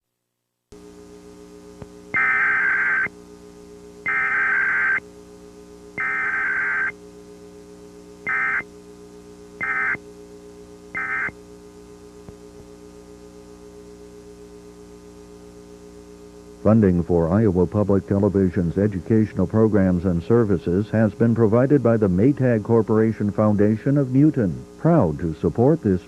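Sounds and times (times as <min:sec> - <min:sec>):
electrical hum: 0:00.2 - 0:26.0
digital data tone bursts: 0:02.2 - 0:03.1, 0:04.1 - 0:05.0, 0:06.0 - 0:07.0, 0:08.3 - 0:08.7, 0:09.6 - 0:10.0, 0:11.0 - 0:11.4.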